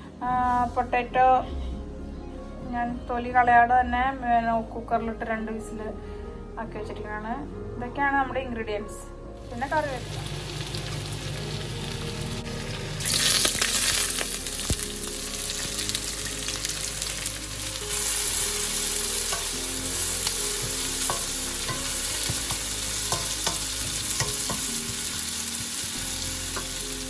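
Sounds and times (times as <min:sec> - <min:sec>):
food sizzling in hot oil: 0:09.4 - 0:27.0
spoon scraping and tapping pan: 0:21.0 - 0:25.0.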